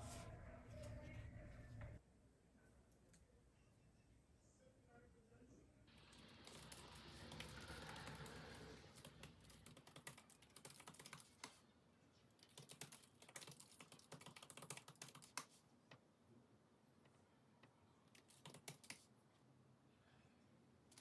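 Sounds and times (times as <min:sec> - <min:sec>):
keyboard typing: 0:06.0 - 0:11.6, 0:12.4 - 0:15.6, 0:18.1 - 0:19.1.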